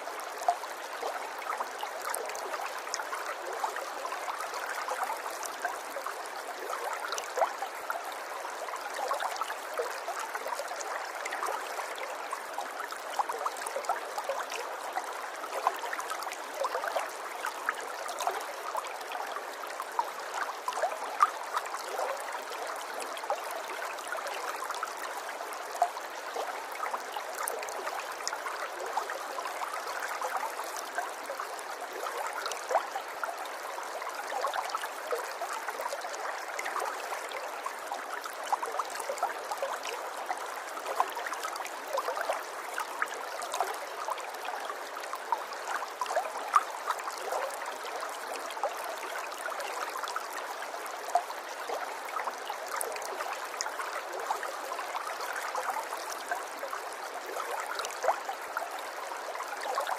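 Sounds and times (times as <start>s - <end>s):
river water flowing over stones: 0.0s - 59.9s.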